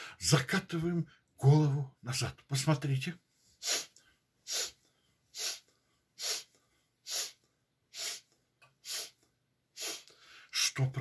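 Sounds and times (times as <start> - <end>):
man sniffing sharply: 3.6 - 10.5.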